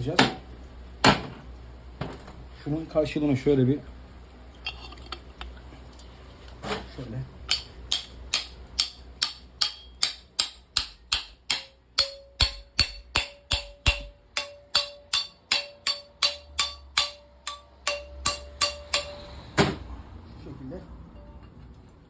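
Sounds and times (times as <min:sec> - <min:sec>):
struck steel ringing: 0:07.5 - 0:19.5
hammer striking metal: 0:07.5 - 0:19.8.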